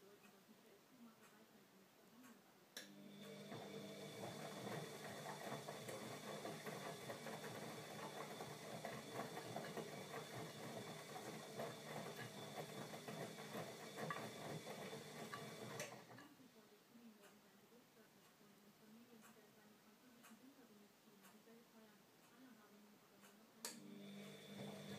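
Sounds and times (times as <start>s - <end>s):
washing machine motor humming: 2.8s - 16.2s, 23.7s - 24.9s.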